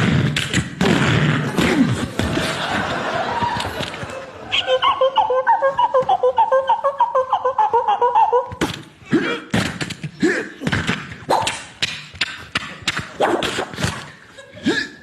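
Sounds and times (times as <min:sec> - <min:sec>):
people laughing: 0:01.6 - 0:08.6, 0:14.0 - 0:15.0.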